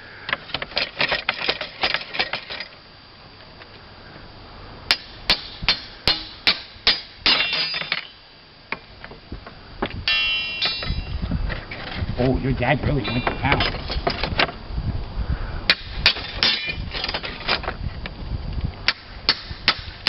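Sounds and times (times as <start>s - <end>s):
hammer tapping metal ripper: 4.9s - 8.2s, 10.1s - 11.1s
metallic ringing rattle: 4.9s - 8.3s, 10.0s - 11.2s, 12.9s - 14.2s, 16.0s - 17.6s.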